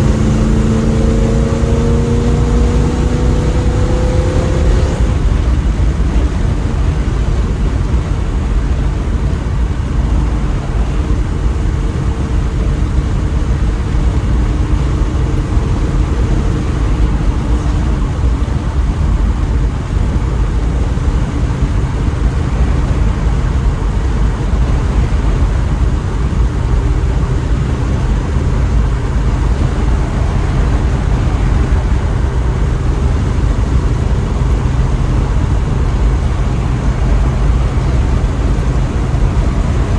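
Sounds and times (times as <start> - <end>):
car engine rumbling: 0.0 - 39.9
road noise: 0.0 - 39.9.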